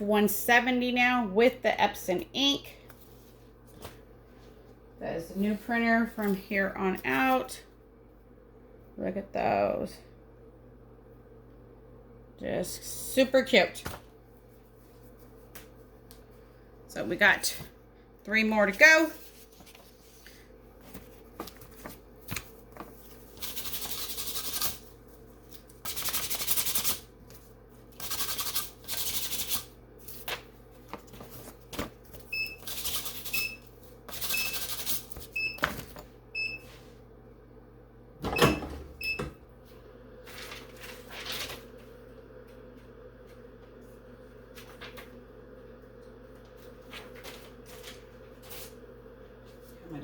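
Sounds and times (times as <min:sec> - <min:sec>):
rustling and handling noise: 0:02.8 - 0:07.5, 0:13.8 - 0:16.6, 0:18.8 - 0:25.9, 0:29.9 - 0:37.1, 0:39.6 - 0:45.2, 0:45.9 - 0:49.9
high electronic timer beeps: 0:34.3 - 0:34.6.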